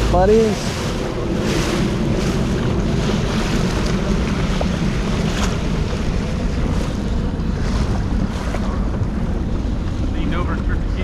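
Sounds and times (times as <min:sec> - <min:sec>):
water washing around a boat: 0:00.0 - 0:11.0
wind buffeting the microphone: 0:00.0 - 0:11.0.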